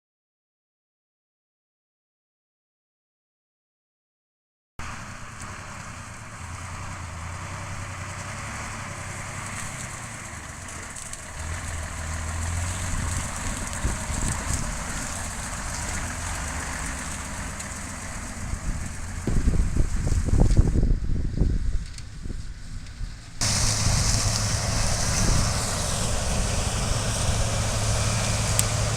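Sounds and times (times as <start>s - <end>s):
diesel engine running: 4.8s - 28.9s
constant hiss: 23.2s - 28.9s.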